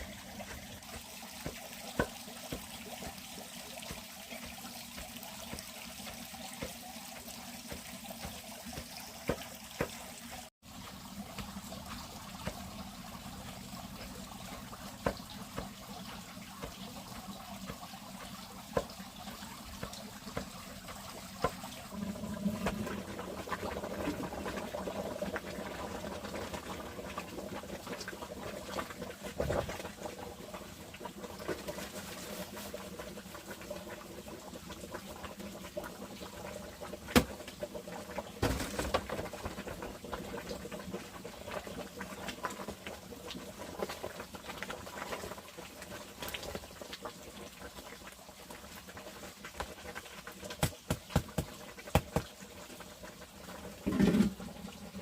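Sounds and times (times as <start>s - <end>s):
water trickling: 0.0s - 33.3s.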